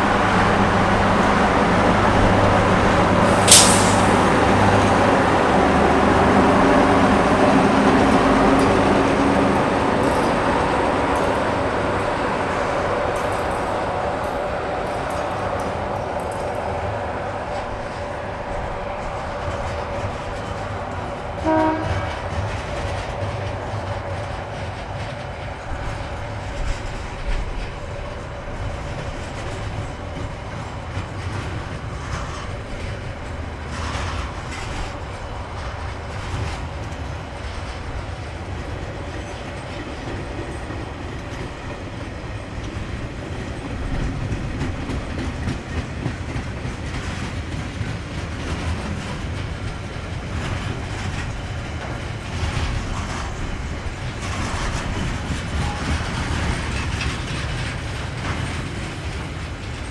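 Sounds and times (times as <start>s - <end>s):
train rolling along track: 0.0s - 59.9s
train horn toot: 21.4s - 22.4s.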